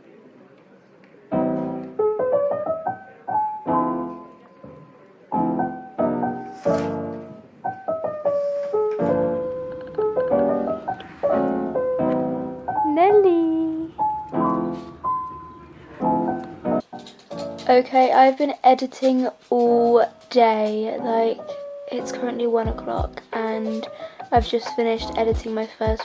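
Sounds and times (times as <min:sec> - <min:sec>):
piano music: 0:01.3 - 0:26.0
faint hiss: 0:06.3 - 0:07.2, 0:08.2 - 0:08.9.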